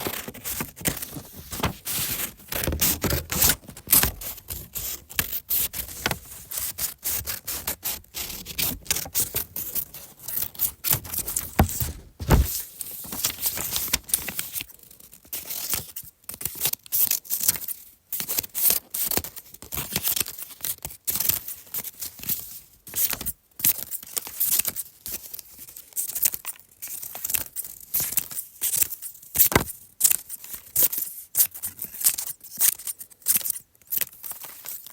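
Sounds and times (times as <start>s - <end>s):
scissors cutting paper: 0.0s - 6.2s.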